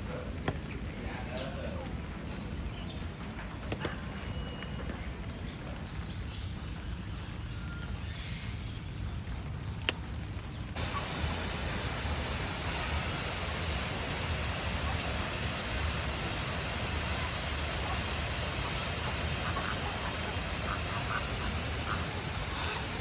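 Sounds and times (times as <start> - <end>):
low outdoor rumble: 0.0 - 23.0
rushing hiss: 10.8 - 23.0.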